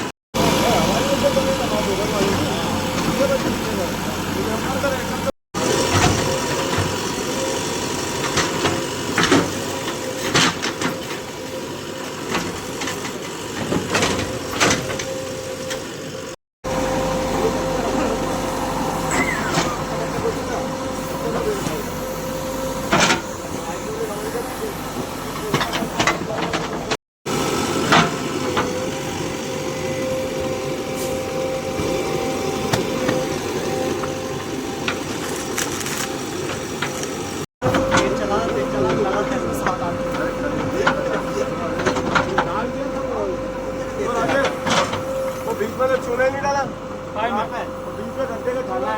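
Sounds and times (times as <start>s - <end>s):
diesel engine running: 0.0s - 48.9s
steady whine: 16.6s - 48.9s.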